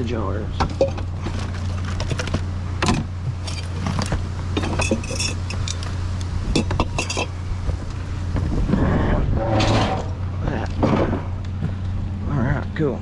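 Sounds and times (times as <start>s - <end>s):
steady low hum: 0.0s - 13.0s
glass and metal objects clattering: 0.6s - 5.9s, 6.5s - 7.4s.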